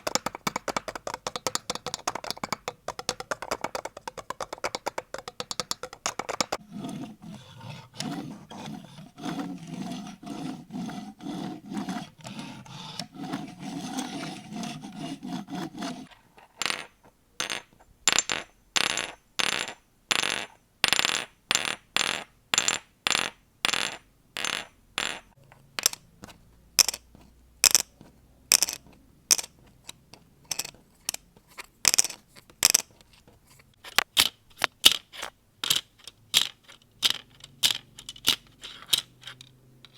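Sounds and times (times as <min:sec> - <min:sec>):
object rubbed or scratched: 0:06.6 - 0:16.6.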